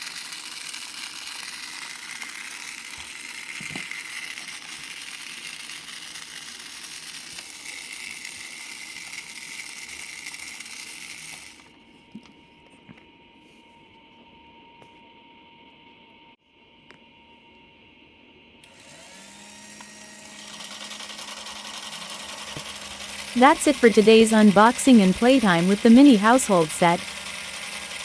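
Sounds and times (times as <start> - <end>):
toy vacuum motor hissing: 0.0 - 11.7, 18.6 - 23.4, 27.0 - 28.0.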